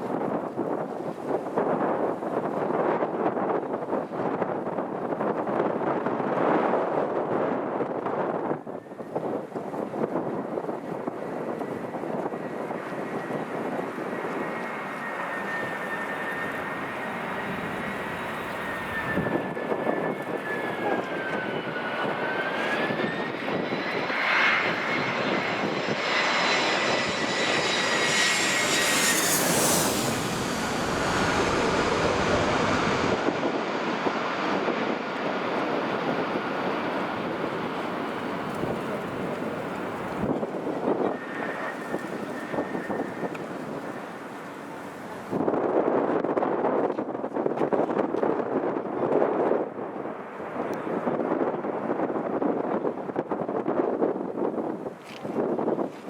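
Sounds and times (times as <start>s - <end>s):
wind noise on microphone: 0.0s - 56.0s
jet engines whining: 11.4s - 45.4s.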